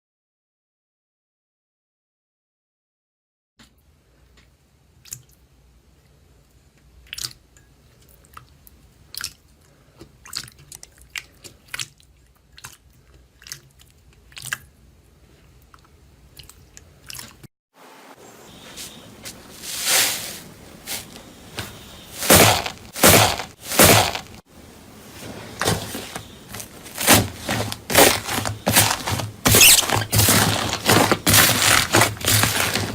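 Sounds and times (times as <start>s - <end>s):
crunchy material squeezed by hand: 18.6s - 24.4s, 25.5s - 32.9s
heavy crunches: 18.7s - 24.4s, 25.1s - 32.9s.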